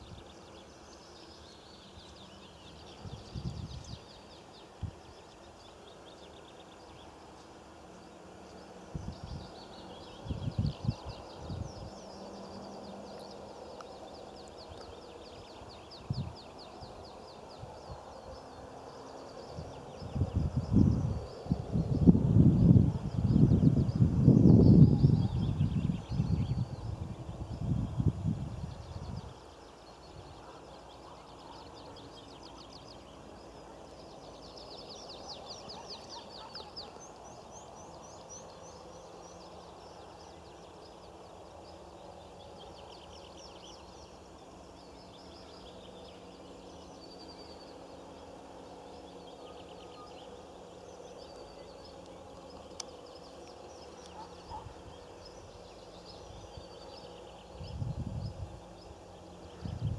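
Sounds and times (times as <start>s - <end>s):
faint outdoor background noise: 0.0s - 59.9s
birds trilling: 53.7s - 55.1s.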